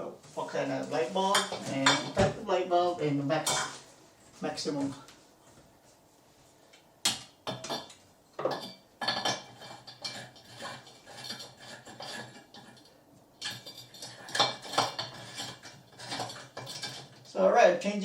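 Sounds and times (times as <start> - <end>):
glass and metal parts clinking: 7.5 - 17.3.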